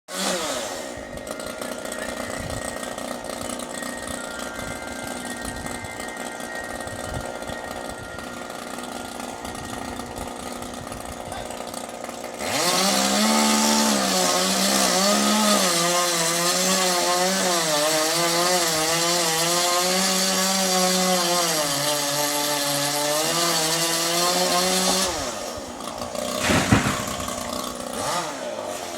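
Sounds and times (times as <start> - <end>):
chainsaw cutting wood: 0.1 - 28.9
sharp loud knock: 26.4 - 27.3.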